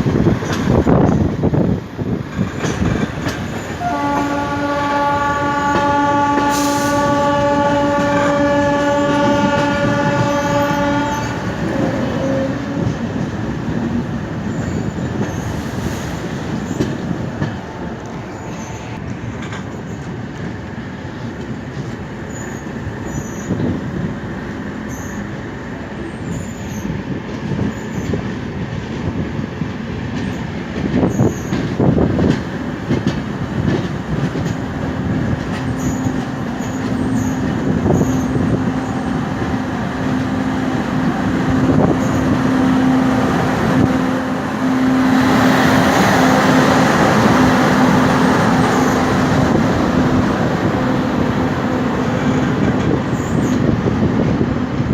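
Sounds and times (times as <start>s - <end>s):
train wheels clattering on rails: 0.0s - 54.9s.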